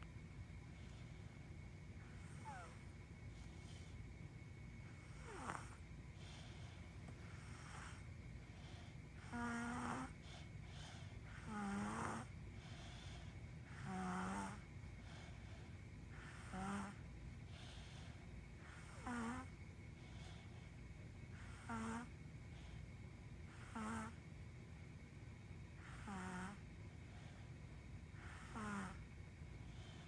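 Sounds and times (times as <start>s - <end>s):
steady low hum: 0.0s - 30.0s
person snoring: 13.7s - 14.6s, 25.8s - 26.6s, 28.2s - 29.0s.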